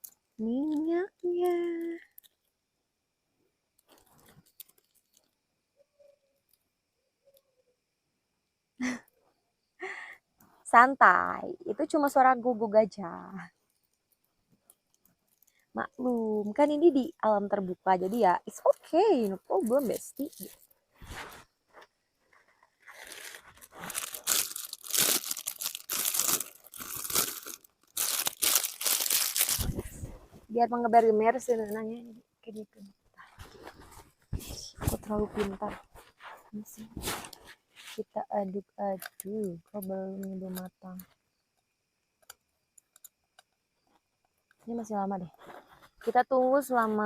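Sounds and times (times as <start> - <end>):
plastic sachets crinkling: 3.8 - 5.3, 17.9 - 21.2, 22.6 - 30.1.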